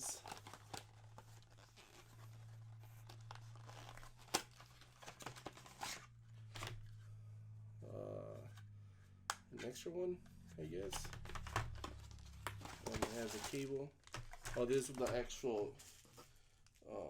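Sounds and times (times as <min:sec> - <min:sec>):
packaging rustling and tearing: 0:00.0 - 0:07.0, 0:10.7 - 0:16.4
faint low hum: 0:00.2 - 0:17.0.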